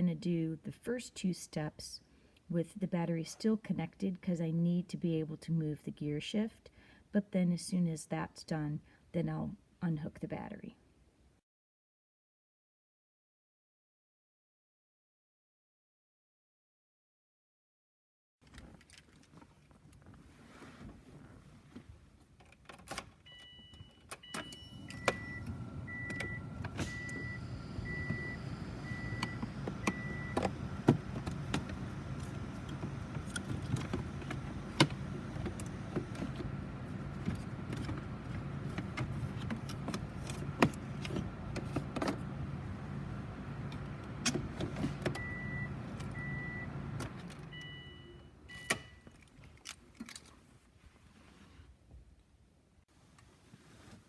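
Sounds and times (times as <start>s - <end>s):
car warning chime beeping: 23.3s - 33.2s, 45.1s - 49.1s
low car hum: 24.6s - 48.6s.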